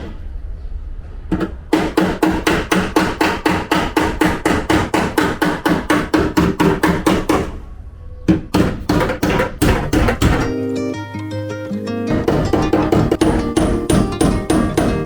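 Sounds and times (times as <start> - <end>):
hammer striking steel panel: 1.3 - 7.6, 8.3 - 10.6, 12.1 - 15.0.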